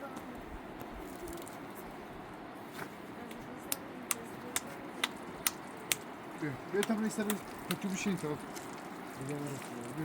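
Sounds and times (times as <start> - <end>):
steady low background noise: 0.0 - 10.0
sharp evenly spaced clicks: 3.7 - 6.1, 6.7 - 7.9.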